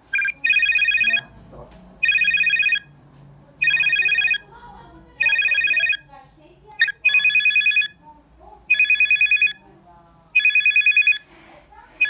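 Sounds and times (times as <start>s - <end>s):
electronic trilling ringtone: 0.1s - 1.3s, 2.0s - 2.9s, 3.6s - 4.4s, 5.2s - 6.0s, 6.8s - 8.0s, 8.7s - 9.6s, 10.4s - 11.2s.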